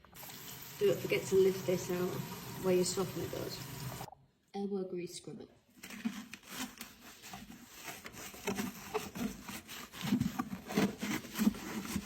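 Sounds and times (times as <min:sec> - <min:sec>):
hand scrubber scrubbing plastic: 0:05.8 - 0:12.0.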